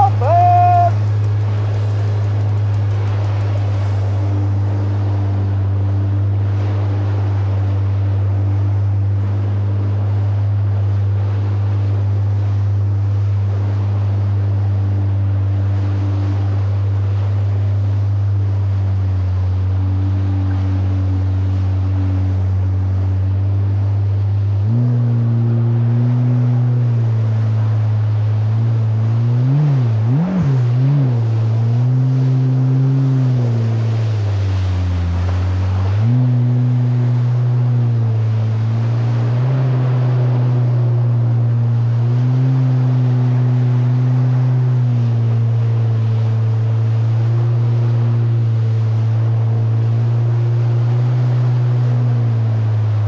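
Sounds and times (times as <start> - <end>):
jet ski engine running: 0.0 - 53.0
wind and water rushing: 0.0 - 53.0.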